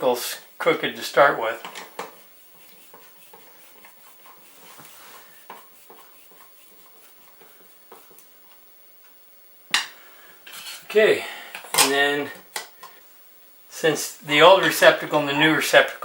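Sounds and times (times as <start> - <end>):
screwdriver clicks and scrapes: 1.6 - 8.2.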